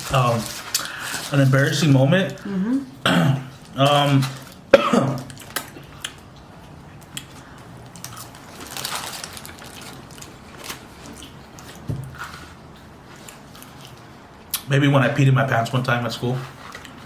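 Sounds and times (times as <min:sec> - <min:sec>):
person chewing: 0:04.4 - 0:14.6.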